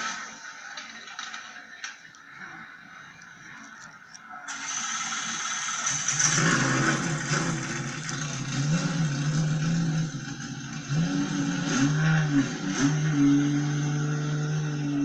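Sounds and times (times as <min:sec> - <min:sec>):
car engine revving: 0:04.5 - 0:15.0.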